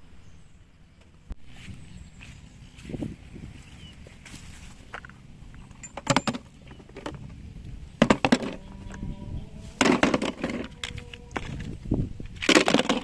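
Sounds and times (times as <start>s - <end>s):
plastic toys clattering: 4.9s - 7.4s, 8.0s - 8.6s, 9.8s - 13.0s.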